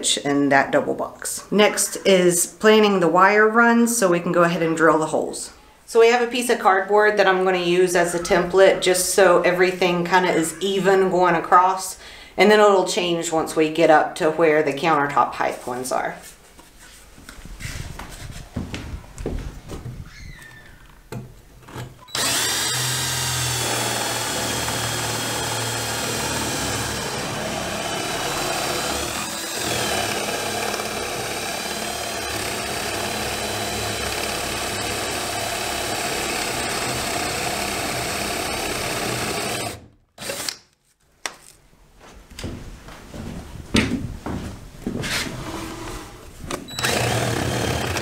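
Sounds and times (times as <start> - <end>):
power drill boring wood: 22.1 - 40.6, 46.7 - 48.0.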